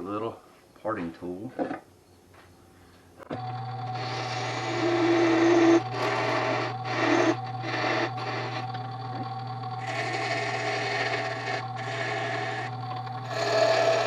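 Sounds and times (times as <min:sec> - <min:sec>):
wood lathe humming: 0:03.3 - 0:14.0
parting tool cutting wood: 0:03.4 - 0:14.0.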